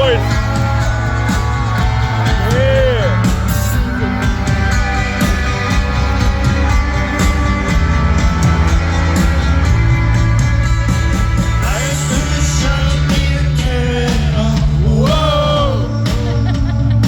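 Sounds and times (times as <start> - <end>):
person singing: 0.0 - 6.4, 11.6 - 17.0
drums with a steady beat: 0.0 - 17.0
guitar: 0.0 - 17.0
heavy bass: 0.0 - 17.0.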